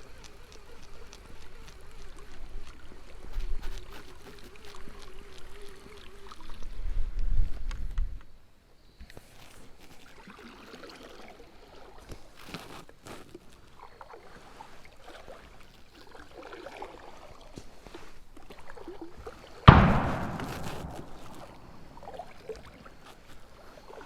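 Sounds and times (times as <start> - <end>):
water lapping and trickling: 0.0 - 7.9, 9.1 - 19.6, 21.2 - 24.0.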